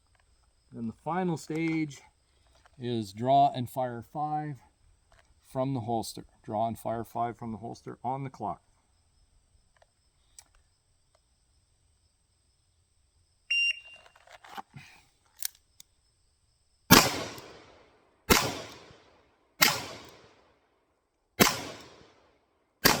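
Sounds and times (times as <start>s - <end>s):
shot timer beep: 13.5s - 14.0s
revolver shots with echo: 16.9s - 17.7s, 18.3s - 19.0s, 19.6s - 20.2s, 21.4s - 22.1s.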